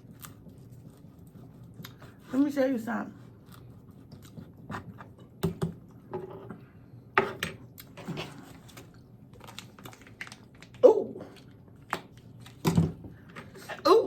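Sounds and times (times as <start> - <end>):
crunchy food being chewed: 0.0 - 2.2.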